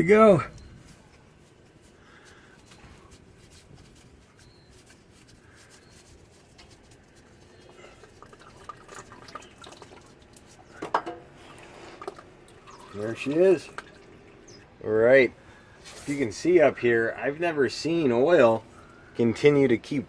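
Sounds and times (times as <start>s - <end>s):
engine oil trickling and dripping: 4.8s - 14.8s
oil filter clicks and knocks: 8.2s - 11.3s.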